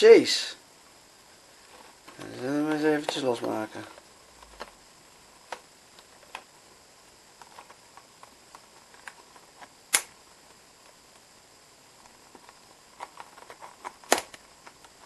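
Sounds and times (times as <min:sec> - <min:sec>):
sharp packaging click: 0:09.9 - 0:10.2, 0:13.4 - 0:14.4.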